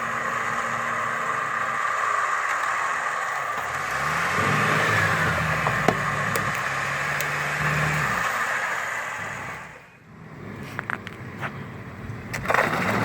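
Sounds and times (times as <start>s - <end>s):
off-road vehicle engine running: 0.0s - 13.0s.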